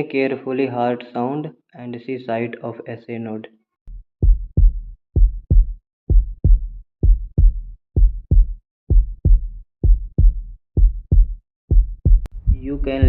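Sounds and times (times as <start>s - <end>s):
heartbeat thumps: 3.9s - 13.0s.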